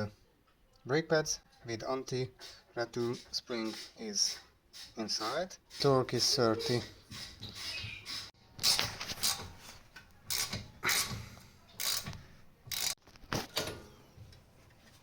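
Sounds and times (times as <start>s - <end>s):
wrench metal clicks and rasps: 7.1s - 9.5s, 10.2s - 11.2s, 11.8s - 13.0s.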